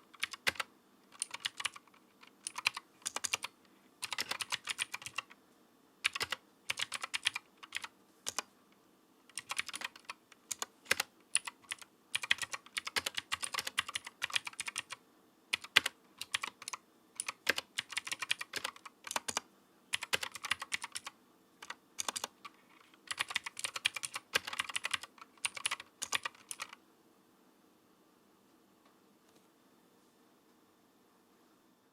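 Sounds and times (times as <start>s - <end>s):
typing on clicky mechanical keyboard: 0.1s - 5.4s, 6.0s - 8.5s, 9.3s - 26.8s.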